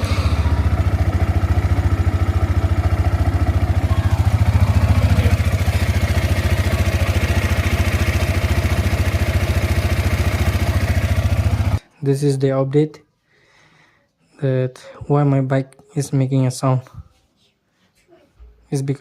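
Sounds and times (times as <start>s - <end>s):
motorcycle engine idling: 0.0s - 11.8s.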